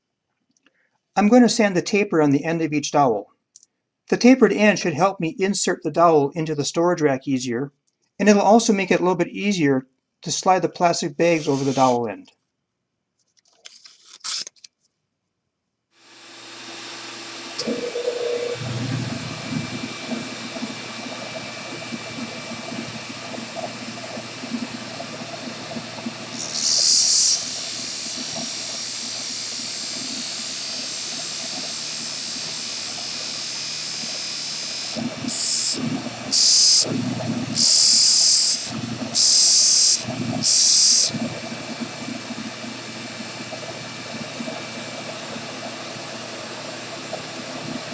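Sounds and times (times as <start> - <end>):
disc sander motor running: 11.4 - 12.0, 16.1 - 47.9
wood being sanded: 11.4 - 12.0, 26.3 - 41.2.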